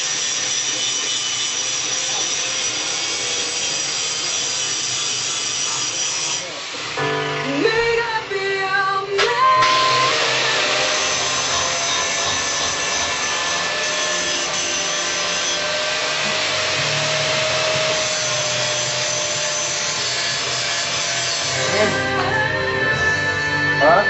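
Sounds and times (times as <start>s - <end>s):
power tool running: 0.0s - 24.0s
music: 7.0s - 12.8s, 20.0s - 24.0s.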